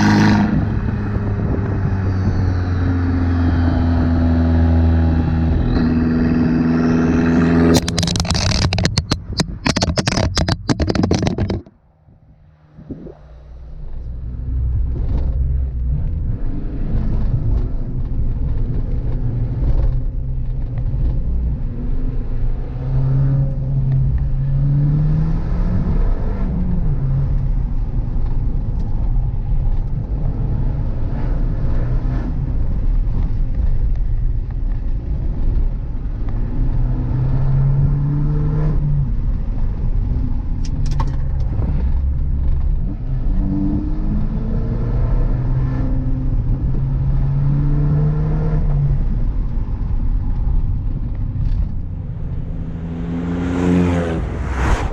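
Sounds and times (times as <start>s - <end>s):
car engine accelerating: 0.0s - 54.9s
exhaust crack: 4.0s - 24.6s, 38.7s - 43.4s, 48.6s - 54.9s.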